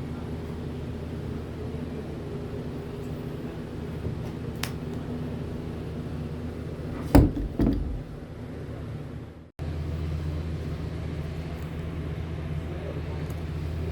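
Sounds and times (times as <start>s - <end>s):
loud knocks: 7.0s - 8.3s.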